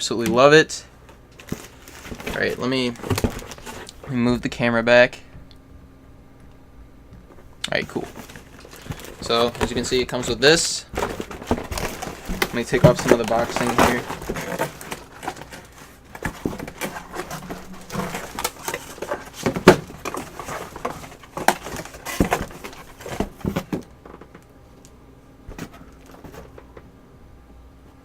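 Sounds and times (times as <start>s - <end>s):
packaging rustling: 1.0s - 4.1s, 7.4s - 24.4s.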